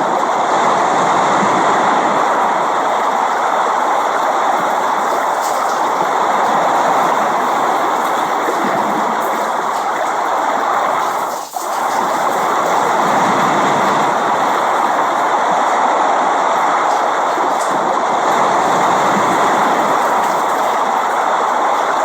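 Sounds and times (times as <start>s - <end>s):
steady rain hiss: 0.0s - 22.0s.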